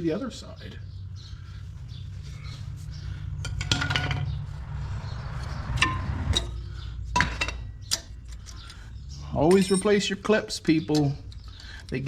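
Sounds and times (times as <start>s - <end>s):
steady low hum: 0.0s - 12.0s
metal brake parts clinking: 5.8s - 10.3s.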